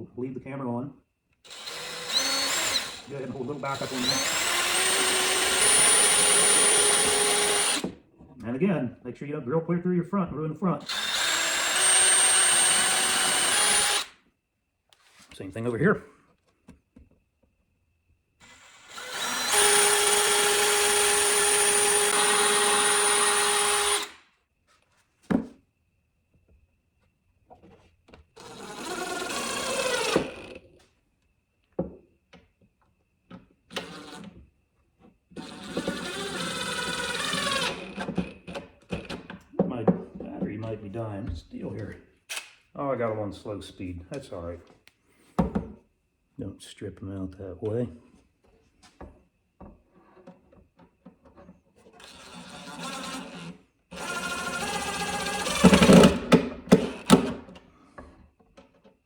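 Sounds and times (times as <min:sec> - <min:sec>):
cordless drill running slowly: 0:01.5 - 0:08.0, 0:10.8 - 0:14.2, 0:18.4 - 0:24.2, 0:28.4 - 0:30.6, 0:33.7 - 0:34.3, 0:35.4 - 0:39.2, 0:52.0 - 0:57.4.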